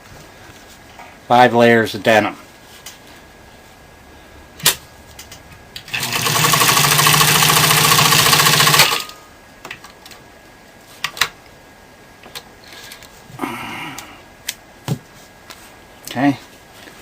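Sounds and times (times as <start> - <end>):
sewing machine running: 5.9 - 9.1.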